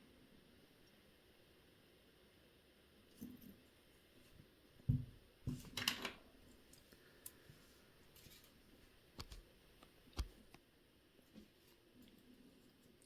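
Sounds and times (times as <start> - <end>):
dull knock: 4.9 - 5.6.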